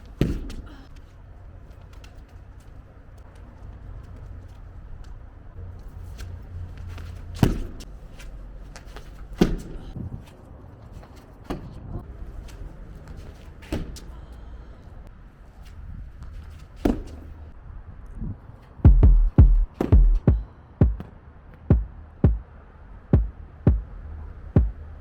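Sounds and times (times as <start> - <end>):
steady low hum: 18.2 - 25.0
heavy thuds: 18.8 - 22.4, 23.2 - 23.9, 24.6 - 24.8.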